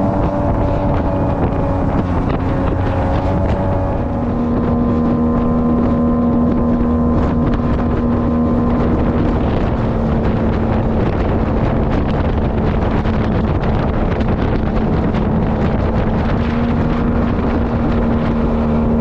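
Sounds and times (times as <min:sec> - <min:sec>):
boat motor running: 0:00.0 - 0:19.0
wind buffeting microphone: 0:00.0 - 0:19.0.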